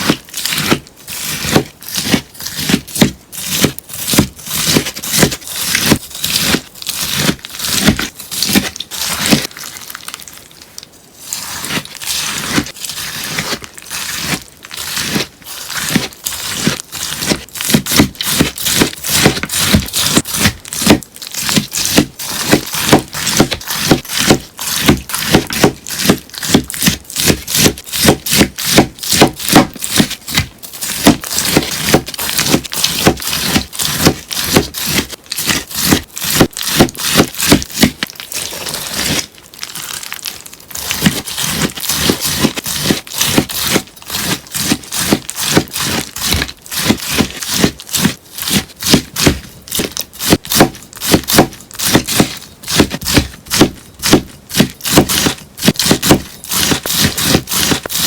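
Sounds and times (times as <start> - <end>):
scissors snipping sponge: 0.0 - 9.5, 11.3 - 40.1, 40.7 - 58.0.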